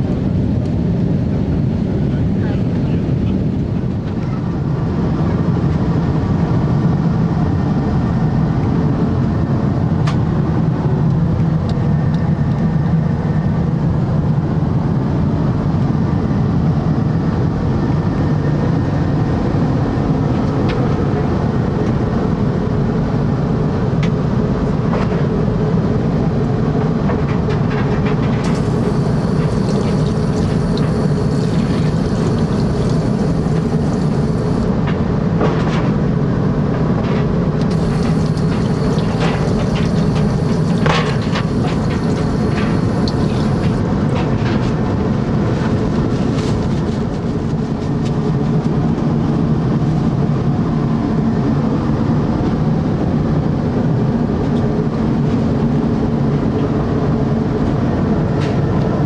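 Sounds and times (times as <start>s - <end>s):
jet airliner cabin rumble: 0.0s - 59.0s
high steady hiss: 28.4s - 34.7s, 37.6s - 43.8s.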